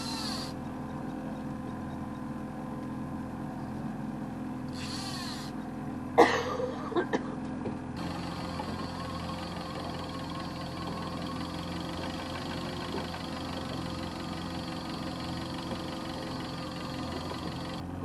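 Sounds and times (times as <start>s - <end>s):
boat engine idling: 0.0s - 2.8s, 4.8s - 6.0s, 7.9s - 17.9s.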